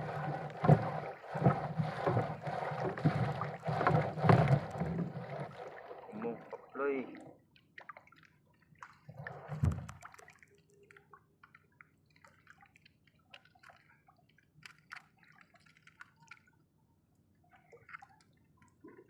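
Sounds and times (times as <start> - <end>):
thud and splash: 0.0 - 6.6, 9.1 - 10.3
water dripping and splashing: 0.0 - 16.6, 17.4 - 19.0.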